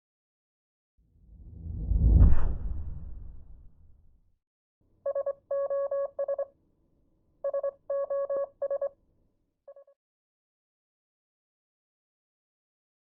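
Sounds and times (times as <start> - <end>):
electronic telephone beeping: 5.1 - 6.5, 7.4 - 9.0, 9.7 - 10.0.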